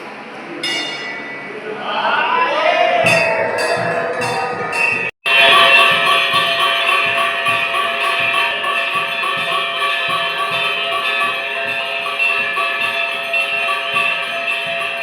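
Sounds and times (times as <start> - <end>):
fast jingling percussion: 3.1 - 15.0
sustained ringing tones: 3.1 - 15.0.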